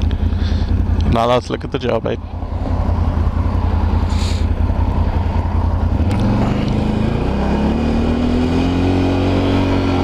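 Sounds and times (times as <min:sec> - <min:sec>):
atv engine accelerating: 0:02.2 - 0:10.0.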